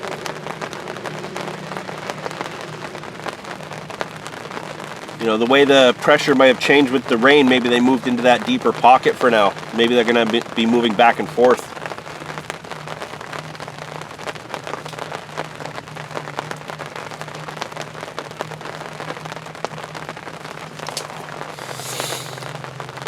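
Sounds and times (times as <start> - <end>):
rain patter: 0.0 - 23.0
brief hiss: 20.9 - 22.6.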